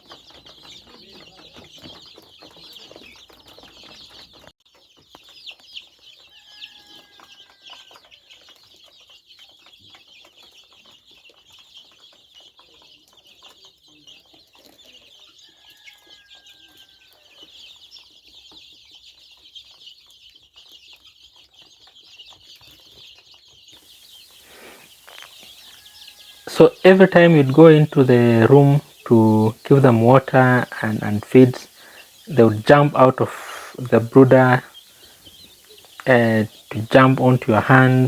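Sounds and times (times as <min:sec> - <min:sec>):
chicks peeping: 0:00.0 - 0:38.0
longer lower call: 0:24.1 - 0:38.0.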